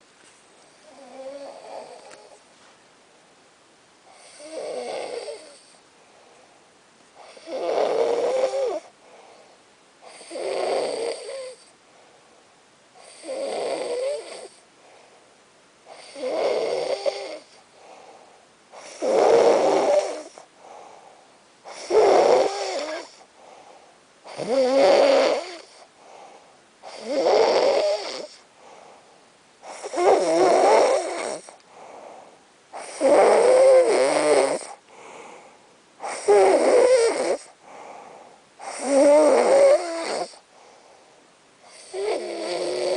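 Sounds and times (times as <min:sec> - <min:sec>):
loud rasping snore: 0:00.8 - 0:02.4, 0:04.1 - 0:05.7, 0:07.2 - 0:08.9, 0:10.1 - 0:11.7, 0:13.0 - 0:14.6, 0:15.9 - 0:17.6, 0:18.8 - 0:20.5, 0:21.7 - 0:23.2, 0:24.3 - 0:25.9, 0:26.8 - 0:28.4, 0:29.6 - 0:31.6, 0:32.8 - 0:34.8, 0:36.0 - 0:37.6, 0:38.6 - 0:40.4, 0:41.7 - 0:42.9
faint breathing: 0:05.4 - 0:07.4, 0:08.8 - 0:09.8, 0:11.5 - 0:12.6, 0:14.6 - 0:16.0, 0:17.4 - 0:19.0, 0:20.2 - 0:21.5, 0:23.2 - 0:24.1, 0:25.8 - 0:27.0, 0:28.4 - 0:30.0, 0:31.5 - 0:33.0, 0:34.7 - 0:36.2, 0:37.4 - 0:38.7, 0:40.3 - 0:41.9.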